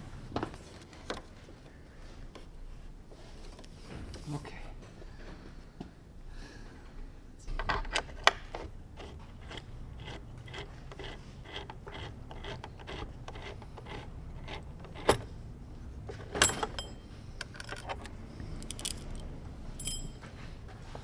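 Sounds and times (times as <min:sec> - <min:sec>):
hand tools clicking and clinking: 0:16.1 - 0:20.5.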